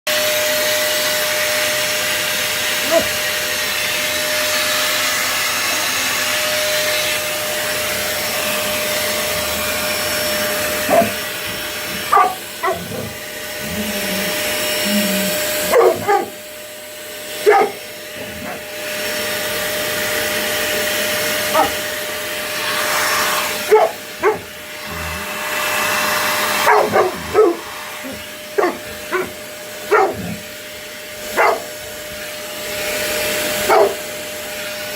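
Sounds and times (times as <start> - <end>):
vacuum cleaner running: 0.1 - 34.9
dog barking: 2.8 - 3.2, 10.8 - 11.3, 11.9 - 13.3, 15.6 - 16.4, 17.4 - 18.7, 21.5 - 21.9, 23.6 - 24.5, 26.6 - 30.4, 31.3 - 31.8, 33.6 - 34.1.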